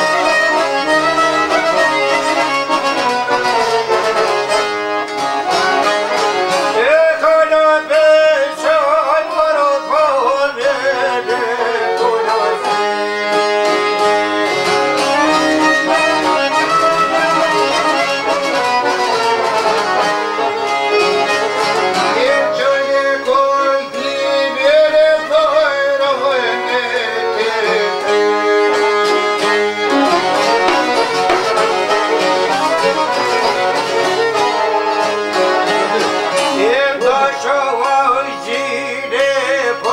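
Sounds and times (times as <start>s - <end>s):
band playing folk song: 0.0s - 39.9s.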